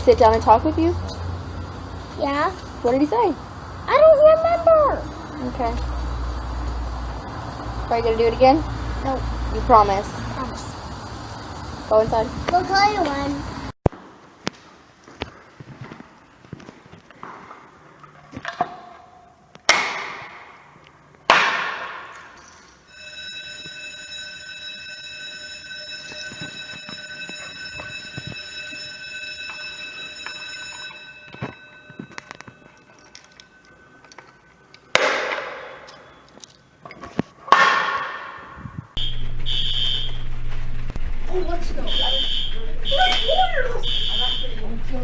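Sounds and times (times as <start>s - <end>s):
alarm buzz: 22.9s - 32.4s, 39.0s - 45.0s
fire alarm tone: 22.9s - 34.5s, 39.0s - 40.7s, 41.3s - 44.9s
loud ringing bangs: 37.5s - 45.0s.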